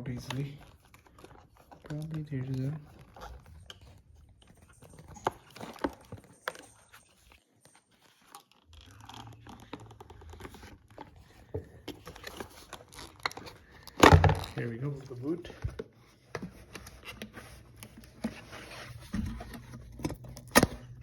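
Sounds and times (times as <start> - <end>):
plastic connector clicks and scraping: 8.3 - 21.0.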